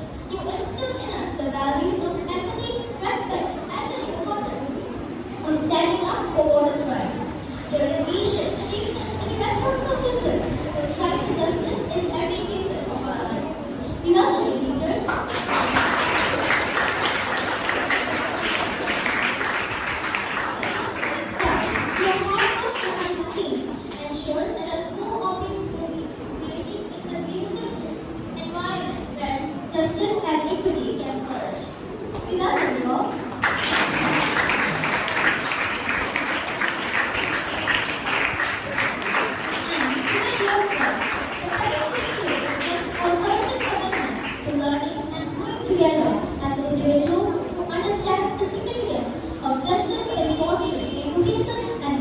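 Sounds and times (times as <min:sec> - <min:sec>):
audience applauding: 0:15.2 - 0:23.1, 0:33.3 - 0:44.4.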